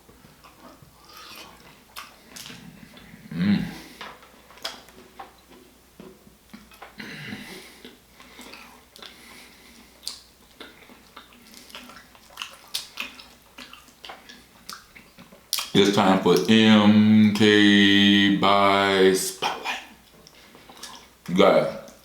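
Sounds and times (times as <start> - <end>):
wet chewing and lip smacks: 0.4 - 3.1, 4.0 - 7.0, 7.7 - 16.5, 19.4 - 22.0.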